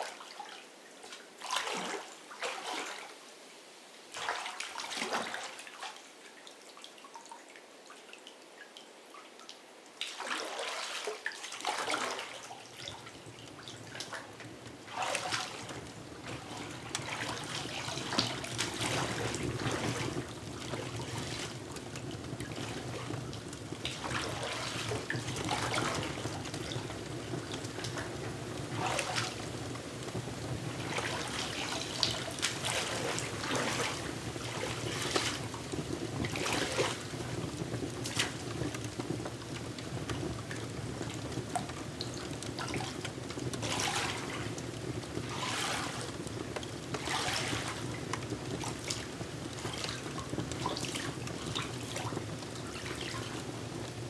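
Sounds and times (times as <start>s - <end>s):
water trickling: 10.0s - 54.0s
water splashing surge: 30.8s - 35.6s.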